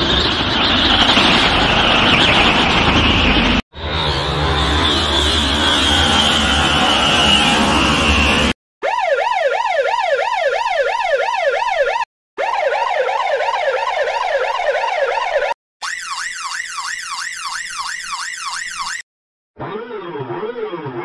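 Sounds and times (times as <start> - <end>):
ambulance siren yelp: 5.5 - 21.0.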